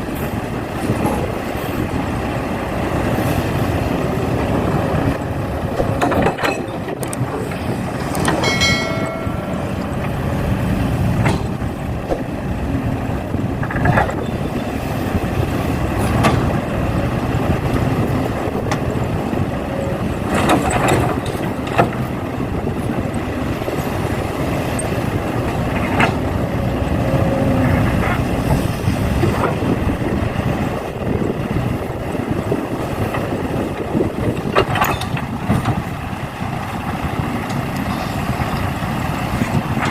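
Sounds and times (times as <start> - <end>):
heavy vehicle engine rumble: 0.0 - 39.9
knocks and clatters: 5.8 - 10.2, 11.1 - 12.3, 20.3 - 22.1.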